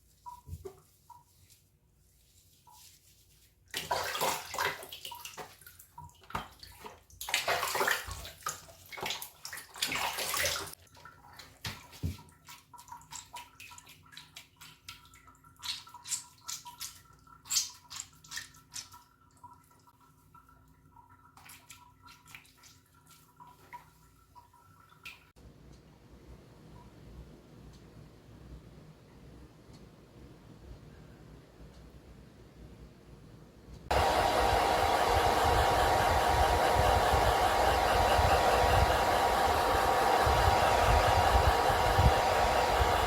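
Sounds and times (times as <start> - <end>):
water running: 0.0 - 25.3
water splashing and dripping: 2.2 - 25.4
faint steady hum: 25.4 - 43.0.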